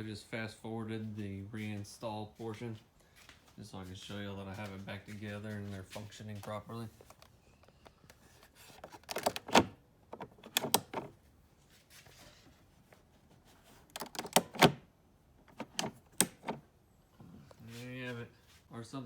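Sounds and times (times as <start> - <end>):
plastic vent switches clicking: 9.1 - 11.1, 13.9 - 14.8, 15.5 - 16.6.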